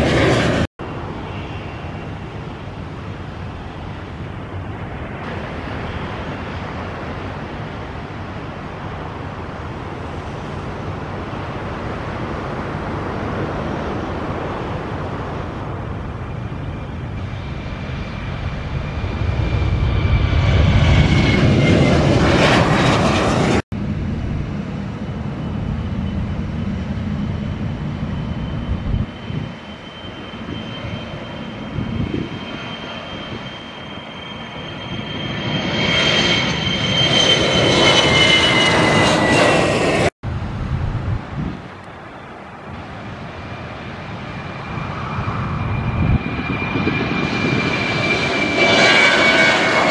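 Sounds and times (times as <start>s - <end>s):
airliner engines roaring: 0.0s - 49.9s
jet engine high whine: 0.0s - 49.9s.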